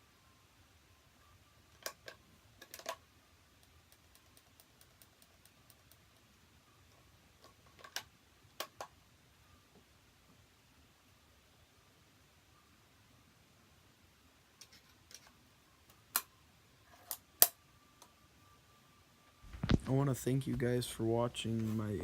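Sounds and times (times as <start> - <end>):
faint evenly spaced ticks: 1.7 - 8.0.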